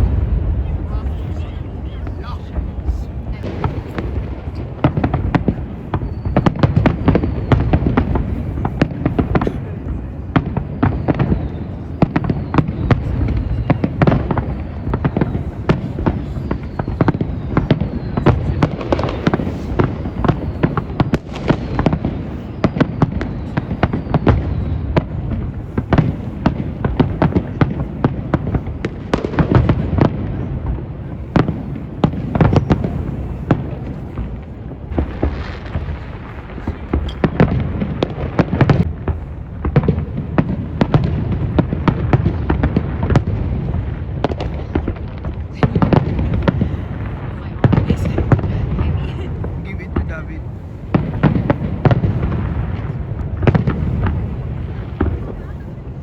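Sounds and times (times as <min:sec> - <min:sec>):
distant fireworks rumble: 0:00.0 - 0:56.0
fireworks cracks and bangs: 0:00.0 - 0:56.0.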